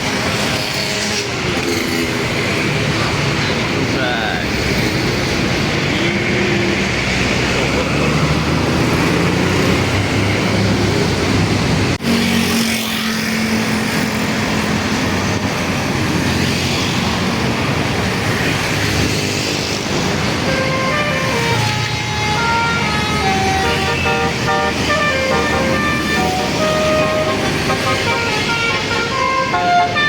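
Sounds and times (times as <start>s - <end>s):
bus engines running past: 0.0s - 30.0s
heavy road traffic: 0.0s - 30.0s
musical bus horn: 20.4s - 30.0s.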